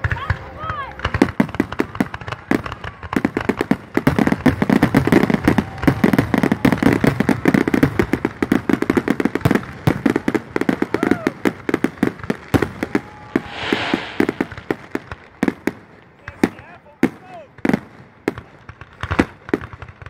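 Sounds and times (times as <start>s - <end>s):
fireworks bursting: 13.4s - 15.1s.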